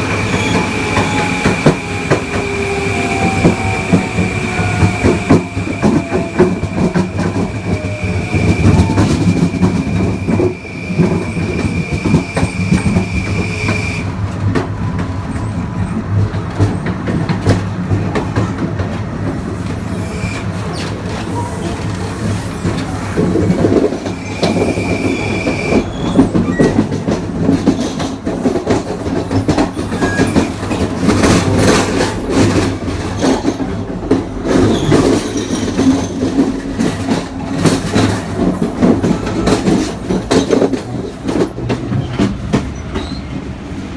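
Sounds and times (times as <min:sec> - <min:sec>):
train rumble: 0:00.0 - 0:43.9
wheels clattering over rail joints: 0:20.6 - 0:43.4.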